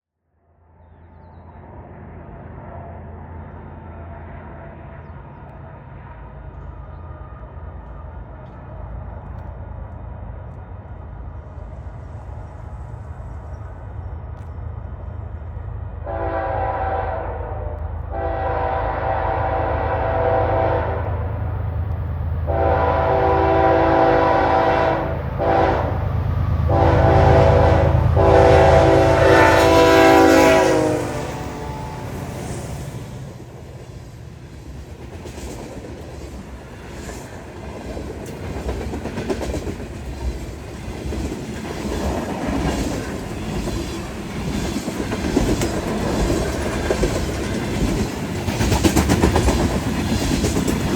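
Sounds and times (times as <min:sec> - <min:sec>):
diesel locomotive rumble: 0:01.0 - 0:50.9
locomotive horn blasts: 0:16.0 - 0:21.5, 0:22.5 - 0:32.2
train wheels clacking on rails: 0:27.6 - 0:50.9.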